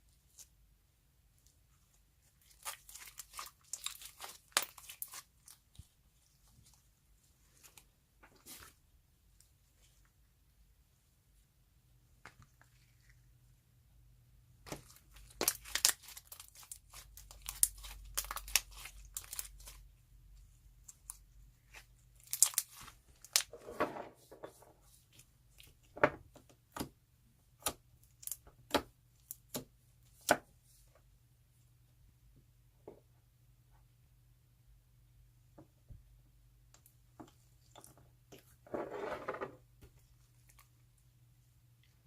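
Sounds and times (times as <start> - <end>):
plastic packaging crinkling: 14.7 - 19.8, 22.2 - 23.5.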